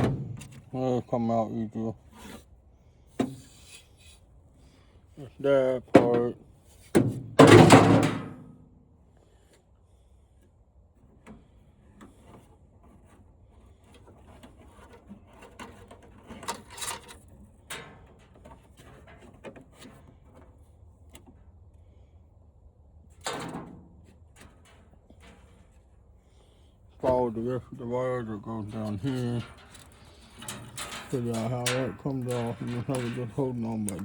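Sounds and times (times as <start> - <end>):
plastic parts clicking and knocking: 29.0 - 34.0.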